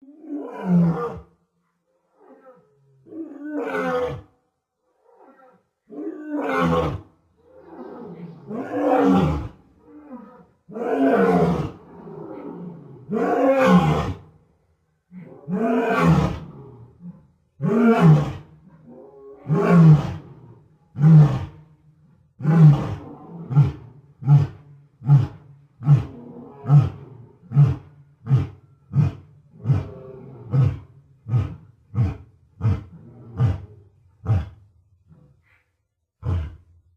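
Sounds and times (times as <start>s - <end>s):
lion roaring: 5.0s - 14.3s, 15.1s - 21.6s, 22.4s - 34.6s, 36.2s - 36.7s.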